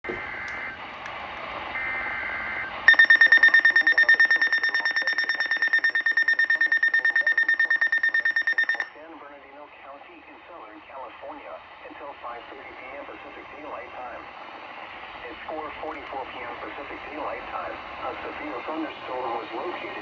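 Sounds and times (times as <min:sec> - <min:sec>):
rapid high-pitched alarm beeping: 0:02.6 - 0:09.0
warbling data tones: 0:02.9 - 0:08.9
radio hiss: 0:09.1 - 0:20.0.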